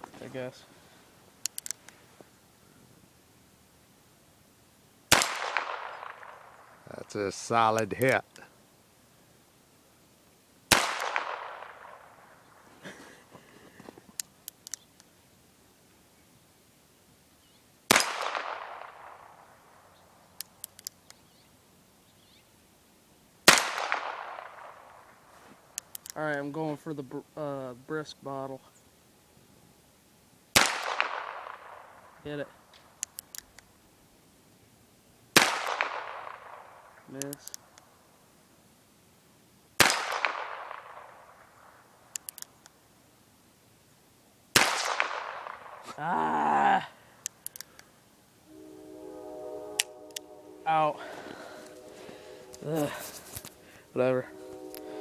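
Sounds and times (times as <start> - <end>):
faint clicks: 1.4 - 2.4, 13.4 - 15.2, 20.3 - 21.3, 25.7 - 26.4, 32.7 - 33.7, 37.2 - 37.9, 42.1 - 42.8, 47.2 - 48.0
revolver gunshot with echo: 10.7 - 12.0.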